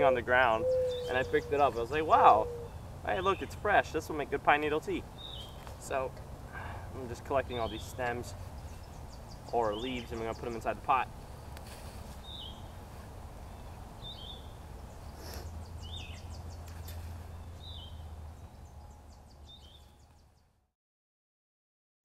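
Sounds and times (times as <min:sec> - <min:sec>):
bird chirping: 0:00.0 - 0:04.0, 0:05.1 - 0:11.0, 0:12.2 - 0:12.8, 0:13.4 - 0:20.6
low steady rumble: 0:12.2 - 0:20.3.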